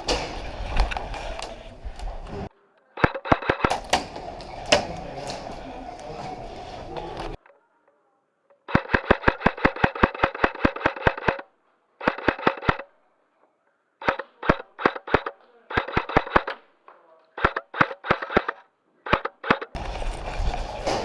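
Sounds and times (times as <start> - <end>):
airsoft gun firing bursts: 3.0 - 4.3, 8.7 - 11.4, 12.0 - 12.8, 14.0 - 16.6, 17.4 - 19.8.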